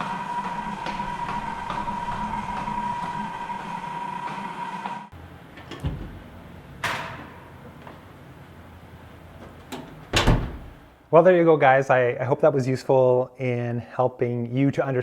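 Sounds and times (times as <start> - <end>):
gimbal motors whining: 0.0 - 5.1.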